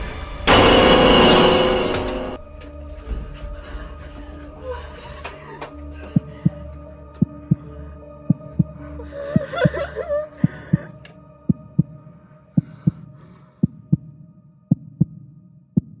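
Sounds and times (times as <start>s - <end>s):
heartbeat thumps: 5.9s - 15.2s, 15.8s - 16.0s.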